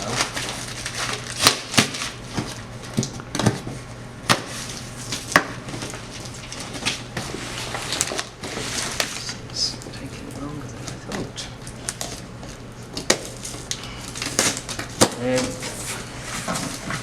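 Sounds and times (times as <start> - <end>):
packing paper crinkling: 0.0 - 3.0.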